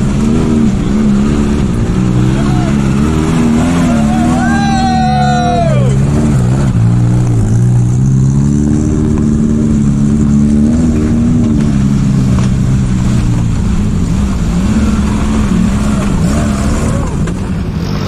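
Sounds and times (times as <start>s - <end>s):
vehicle engine running hard: 0.0s - 18.0s.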